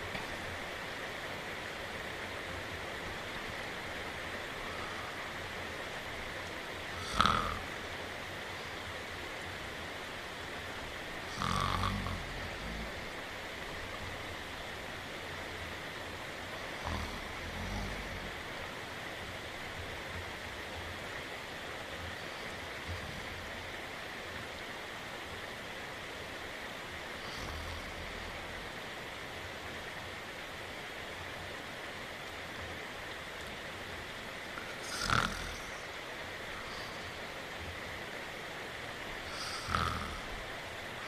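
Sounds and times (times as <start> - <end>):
rain hissing: 0.0 - 41.0
person snoring: 7.0 - 7.7, 11.3 - 13.0, 16.8 - 18.3, 27.2 - 28.4, 34.8 - 35.8, 39.3 - 40.3.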